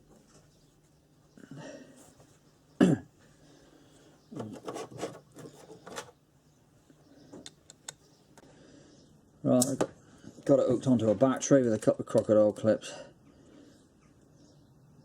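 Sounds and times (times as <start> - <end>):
tools clunking and rattling: 4.3 - 6.2.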